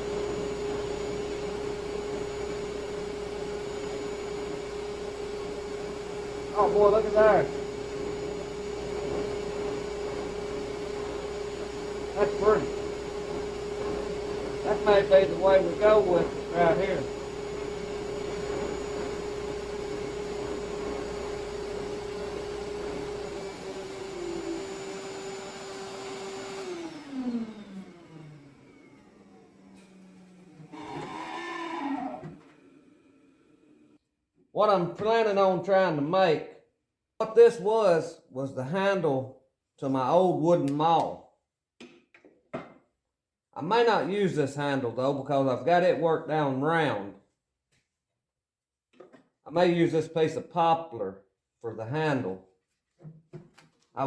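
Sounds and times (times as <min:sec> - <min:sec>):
power tool whining and spinning down: 0:00.0 - 0:34.0
shop vacuum running: 0:00.0 - 0:34.0.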